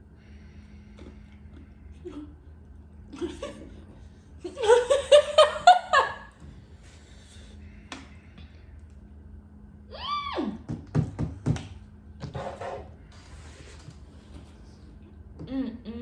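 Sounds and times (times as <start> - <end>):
person laughing: 3.1 - 3.8, 4.4 - 6.3.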